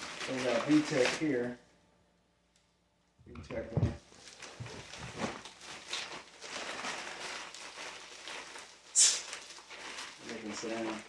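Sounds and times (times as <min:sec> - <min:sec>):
packaging rustling: 0:00.0 - 0:01.5, 0:04.0 - 0:11.0
short sharp hiss: 0:08.9 - 0:09.3.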